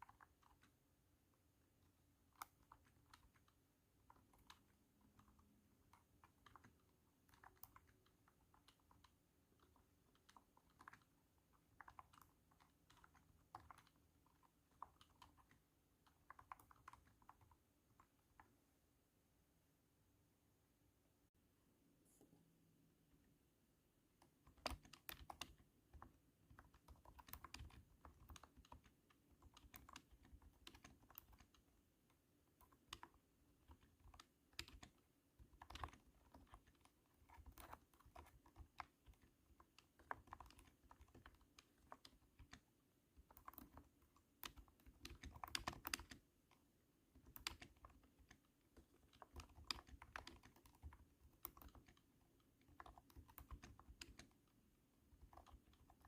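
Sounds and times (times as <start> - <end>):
thunky keyboard typing: 0.0 - 18.6, 24.2 - 56.0.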